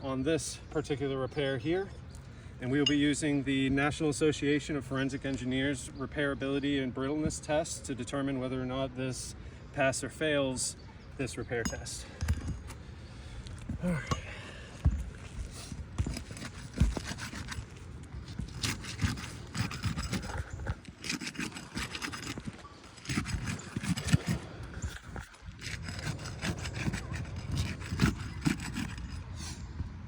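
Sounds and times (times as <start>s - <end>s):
tool scraping roof shingle: 11.8s - 29.6s.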